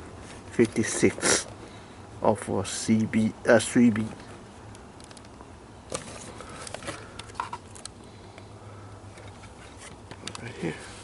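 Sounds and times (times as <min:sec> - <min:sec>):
faint rustles: 0:04.0 - 0:11.0.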